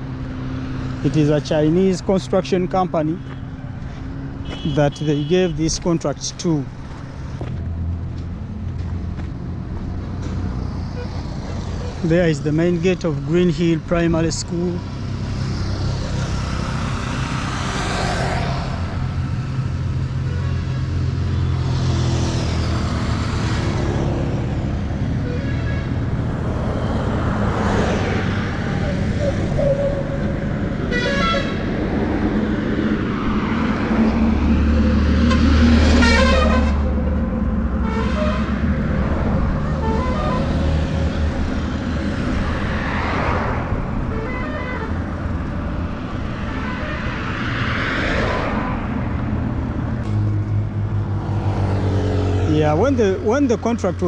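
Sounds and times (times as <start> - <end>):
vehicles passing: 0.0 - 54.0
short horn toots: 4.4 - 5.4, 35.3 - 36.8.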